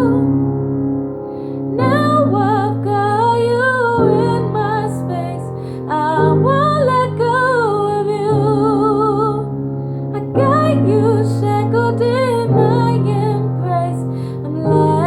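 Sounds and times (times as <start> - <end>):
woman singing wordless melody: 0.0 - 0.5, 1.6 - 15.0
piano chords: 0.0 - 15.0.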